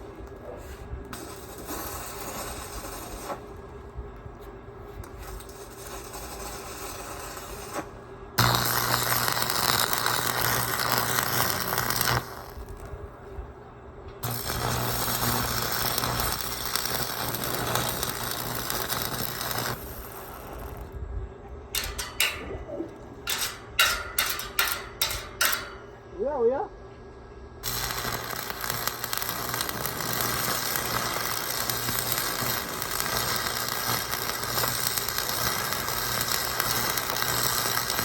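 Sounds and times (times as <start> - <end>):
arc welding crackling and hissing: 0.0 - 13.5, 14.2 - 21.0, 21.7 - 26.0, 27.6 - 38.0
steady low hum: 0.0 - 38.0
metallic taps and knocks: 21.8 - 22.6, 23.2 - 25.9.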